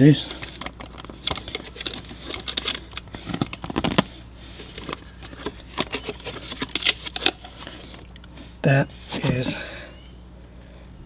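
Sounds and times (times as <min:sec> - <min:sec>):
plastic fan housing clicking and knocking: 0:00.2 - 0:08.3.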